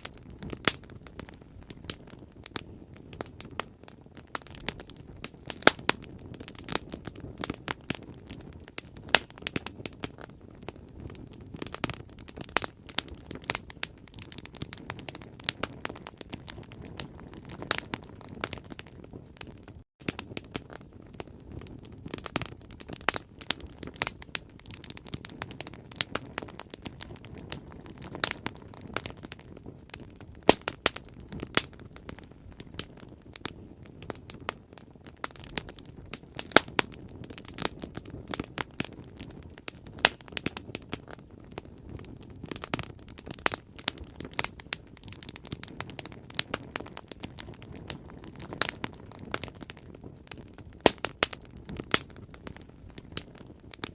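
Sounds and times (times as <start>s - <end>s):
burning wood popping and snapping: 0.0s - 53.9s
flames rushing: 0.0s - 53.9s.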